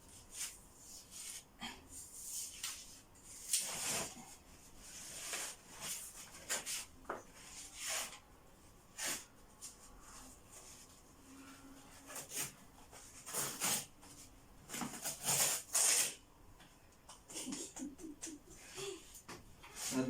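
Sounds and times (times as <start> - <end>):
wallpaper tearing and scraping: 0.1 - 8.3, 8.9 - 16.2.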